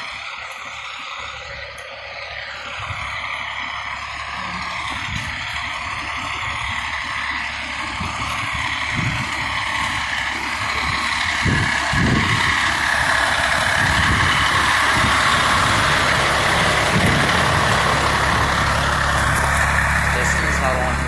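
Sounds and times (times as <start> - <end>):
large truck engine running: 0.0 - 21.0.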